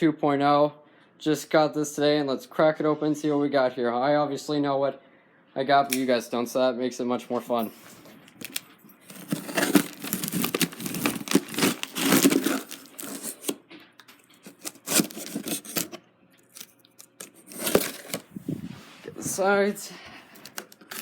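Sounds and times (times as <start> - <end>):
packing tape ripping: 8.4 - 13.6, 14.4 - 18.2, 20.4 - 21.0
cardboard flaps scraping: 9.2 - 13.6.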